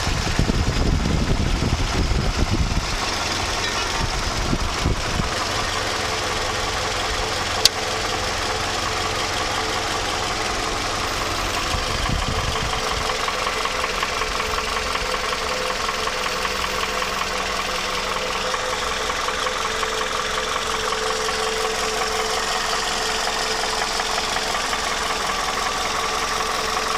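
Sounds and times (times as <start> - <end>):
car engine running: 0.0 - 26.9
engine knocking: 0.0 - 26.9
sharp click: 7.6 - 7.8.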